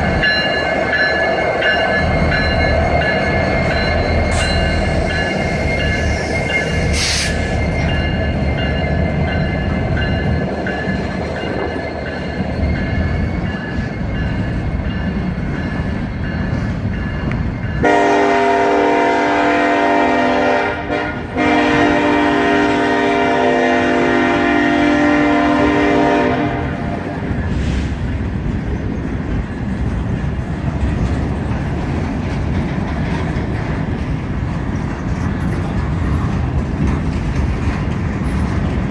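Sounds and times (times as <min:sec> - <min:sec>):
train wheels rumbling on rail: 0:00.0 - 0:38.9
high wheel squeal: 0:00.5 - 0:09.4
locomotive horn: 0:17.8 - 0:27.0.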